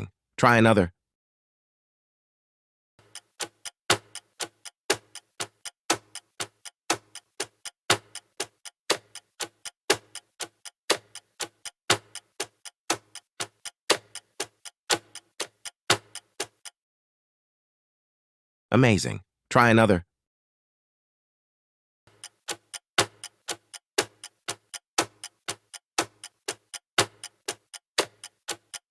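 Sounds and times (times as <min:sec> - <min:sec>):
clock ticking: 0:03.0 - 0:16.8, 0:22.1 - 0:28.9.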